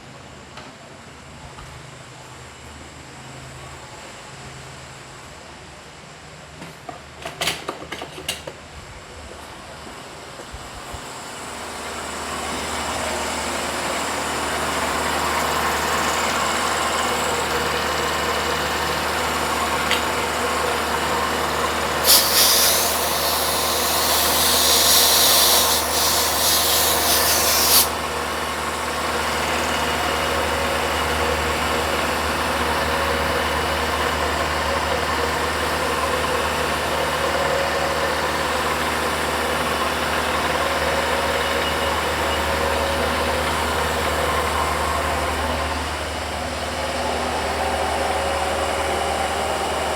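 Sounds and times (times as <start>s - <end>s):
milling machine humming: 11.8s - 49.9s
loud hiss: 13.7s - 29.0s.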